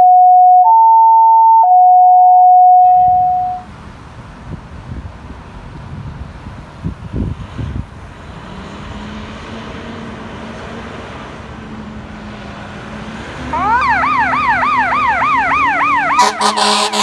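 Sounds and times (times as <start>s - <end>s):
electronic siren yelping: 0.0s - 3.6s, 13.5s - 17.0s
truck engine droning: 6.4s - 17.0s.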